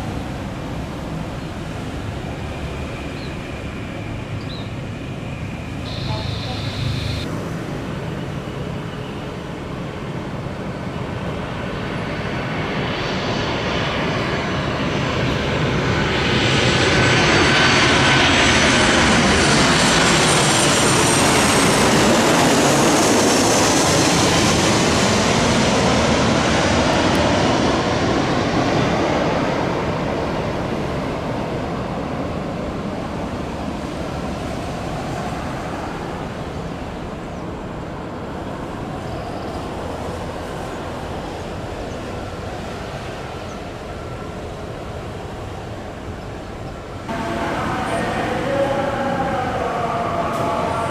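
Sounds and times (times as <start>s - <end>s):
aircraft engine passing by: 0.0s - 50.9s
high whine falling in pitch: 5.7s - 7.3s, 47.1s - 49.8s.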